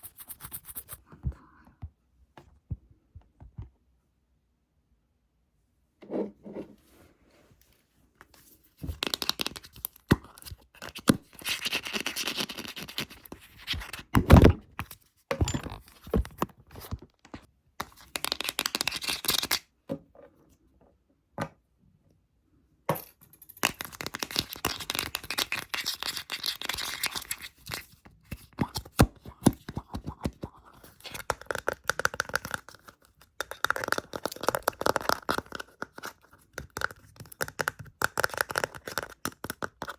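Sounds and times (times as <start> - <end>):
close scratching and rubbing: 0.0 - 1.0.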